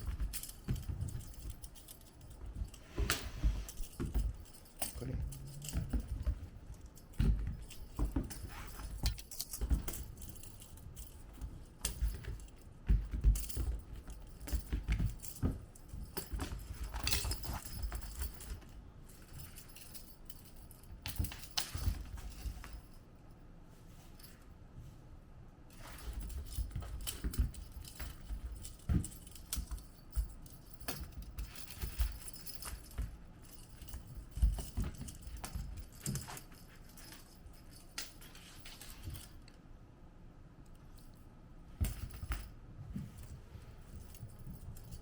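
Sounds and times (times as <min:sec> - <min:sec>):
toy jingling: 0:00.0 - 0:02.8, 0:03.6 - 0:22.6
soft thumps on floor: 0:00.0 - 0:10.2.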